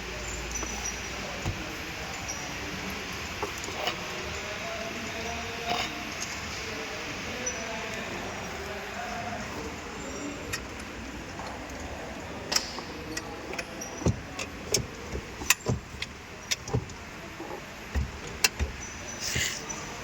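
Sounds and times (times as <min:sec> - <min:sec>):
tools and parts clicking: 0:12.5 - 0:17.0.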